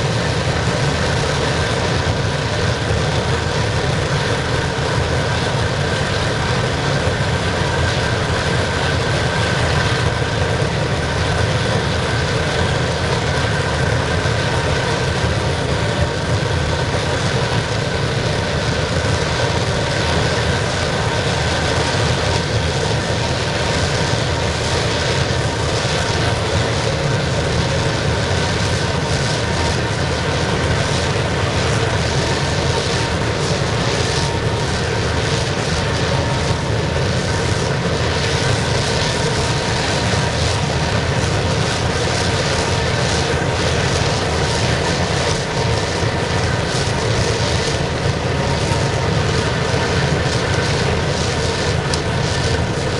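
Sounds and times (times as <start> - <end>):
oil burner roaring: 0.0 - 52.9.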